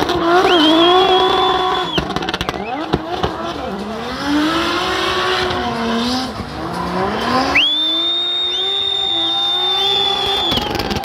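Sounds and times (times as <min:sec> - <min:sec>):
car engine revving: 0:00.0 - 0:11.0
tyre squeal: 0:06.9 - 0:11.0.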